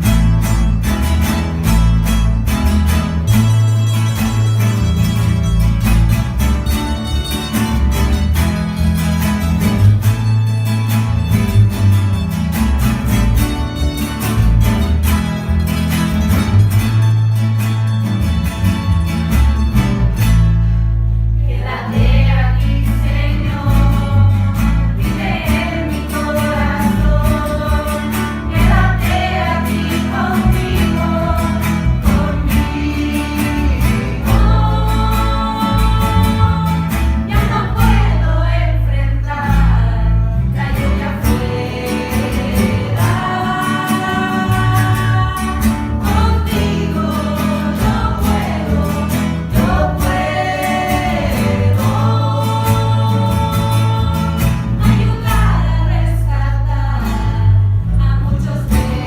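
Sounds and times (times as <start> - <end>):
bass line: 0.0 - 59.0
guitar: 0.0 - 59.0
choir singing: 21.4 - 59.0.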